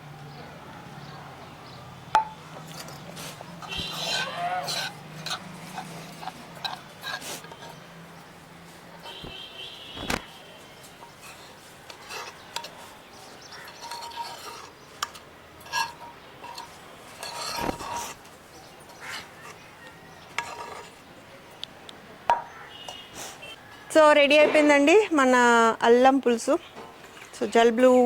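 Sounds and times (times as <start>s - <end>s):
utensil clinking in pot: 11.0s - 18.2s.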